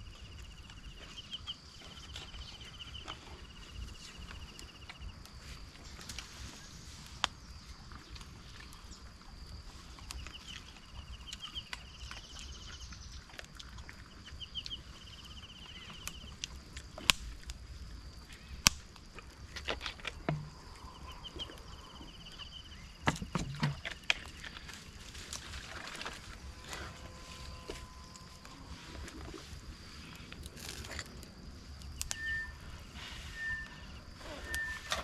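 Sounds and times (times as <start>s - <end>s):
steady high-pitched hum: 25.1s - 35.0s.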